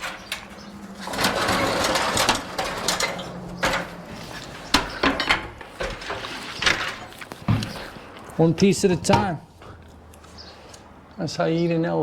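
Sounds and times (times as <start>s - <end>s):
falling debris rush: 0.0s - 4.4s
wood and metal knocking: 0.0s - 7.8s.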